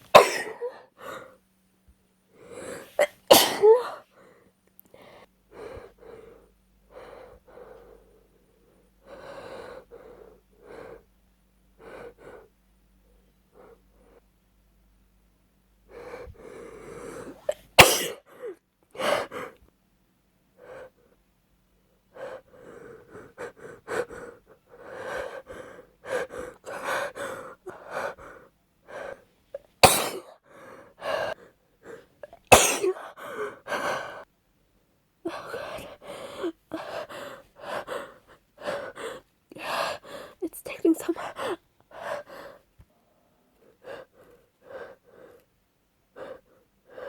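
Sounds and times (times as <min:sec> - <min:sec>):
woman sneezing: 0:00.1 - 0:00.8, 0:03.0 - 0:04.0, 0:17.4 - 0:18.2, 0:29.8 - 0:30.3, 0:32.2 - 0:33.0
woman gasping in-breaths: 0:35.3 - 0:42.6.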